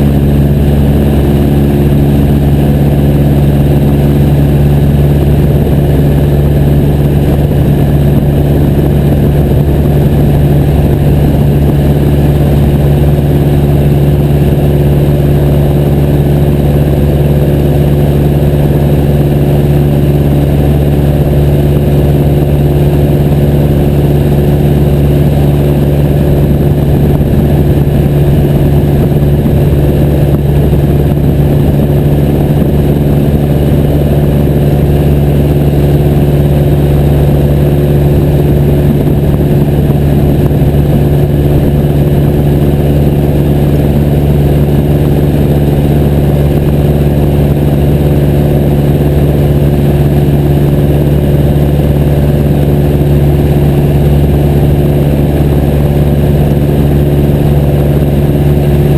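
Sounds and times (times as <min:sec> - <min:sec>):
airplane engine drone: 0:00.0 - 0:58.9.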